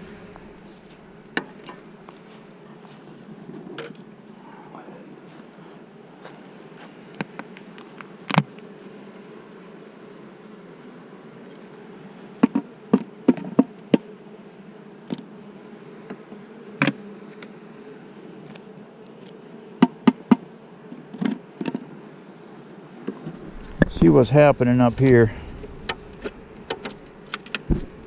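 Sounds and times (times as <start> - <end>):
honeybees buzzing: 0.0 - 28.0
sharp clicks and knocks: 25.0 - 27.9.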